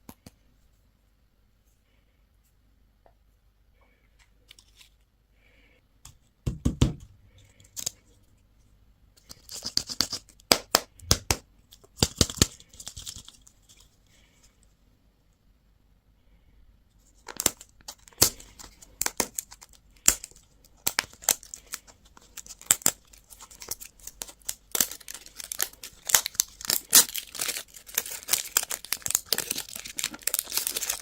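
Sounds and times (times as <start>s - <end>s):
plastic packaging crackling and tearing: 17.2s - 31.0s.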